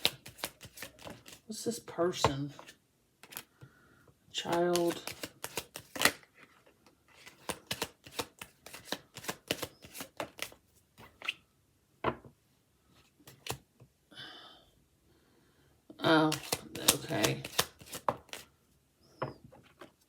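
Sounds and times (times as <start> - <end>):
cards being shuffled: 0.0 - 1.5, 2.2 - 3.5, 4.4 - 11.4, 13.2 - 13.6, 16.0 - 18.5.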